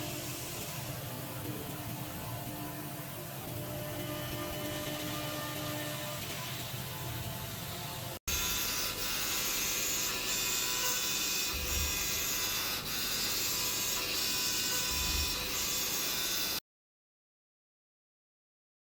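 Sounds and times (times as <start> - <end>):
machine tool cutting metal: 8.3 - 16.6.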